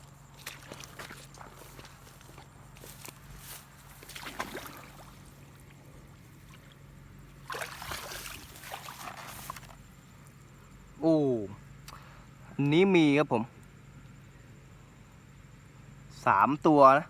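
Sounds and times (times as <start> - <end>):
shallow water sloshing and splashing: 0.0 - 10.4.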